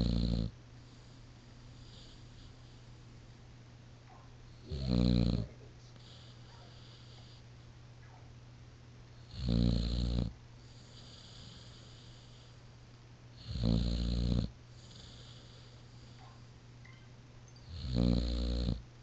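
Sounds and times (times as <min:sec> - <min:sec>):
dog snoring loudly: 0:00.0 - 0:01.2, 0:01.8 - 0:02.8, 0:04.6 - 0:07.4, 0:09.2 - 0:12.6, 0:13.4 - 0:16.2, 0:17.6 - 0:18.8.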